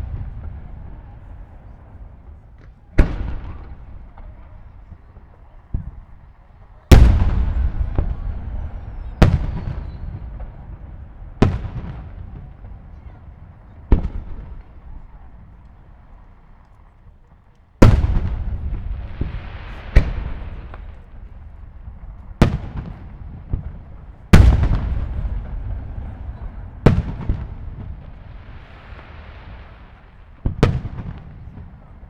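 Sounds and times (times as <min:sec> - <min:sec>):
fireworks shells booming: 0:00.0 - 0:15.7, 0:17.8 - 0:32.0
rolling echo: 0:00.0 - 0:32.0
soft hiss: 0:14.3 - 0:31.9.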